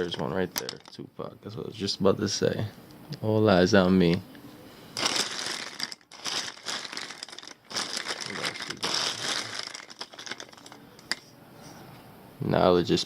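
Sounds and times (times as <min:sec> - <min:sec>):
plastic lighters rustling: 0:05.0 - 0:11.2.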